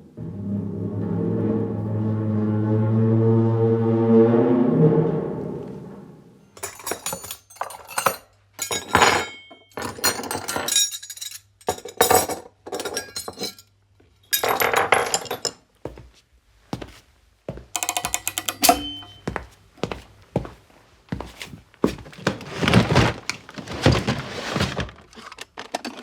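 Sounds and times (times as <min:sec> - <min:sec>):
deep ringing musical tone: 0:00.0 - 0:06.6
hard objects clinking and rattling: 0:06.6 - 0:13.7, 0:14.3 - 0:15.6, 0:17.8 - 0:19.2.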